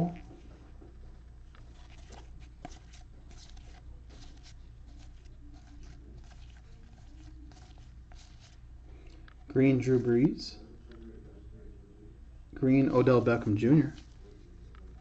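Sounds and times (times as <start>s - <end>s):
trading cards rustling and clicking: 0.0s - 10.3s.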